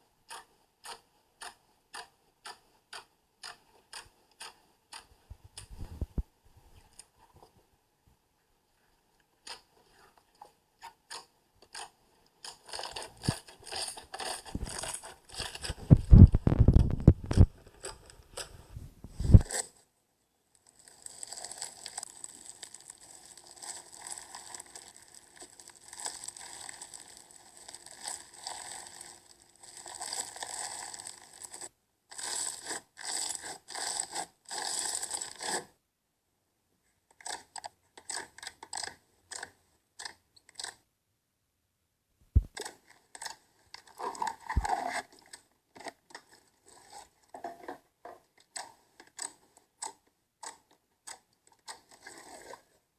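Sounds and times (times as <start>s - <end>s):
slime crackling by hand: 9.4s - 18.5s, 20.6s - 35.7s.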